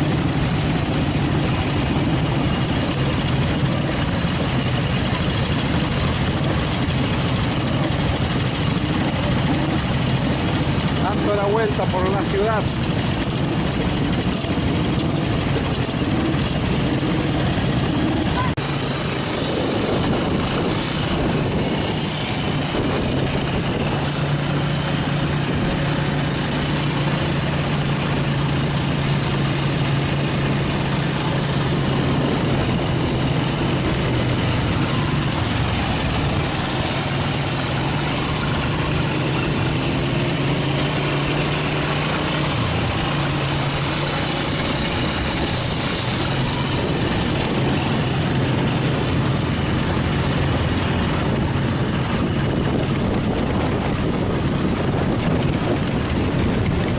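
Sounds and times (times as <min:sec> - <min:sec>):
motorcycle engine running: 0:00.0 - 0:56.9
steady rushing noise: 0:00.0 - 0:56.9.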